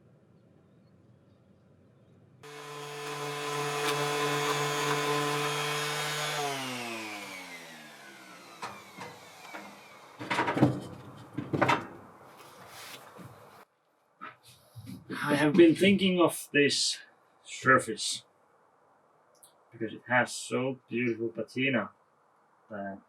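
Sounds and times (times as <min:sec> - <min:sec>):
power tool motor running: 0:02.4 - 0:10.5
rustling scraping bursts: 0:12.2 - 0:13.6.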